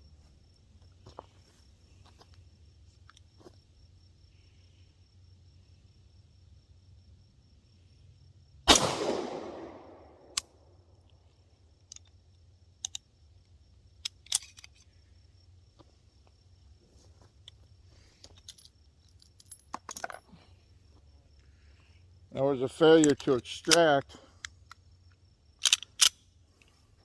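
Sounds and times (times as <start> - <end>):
pistol shot with echo: 8.7 - 10.4
metallic clicks of pistol handling: 11.8 - 13.1, 14.0 - 14.9, 23.0 - 26.8.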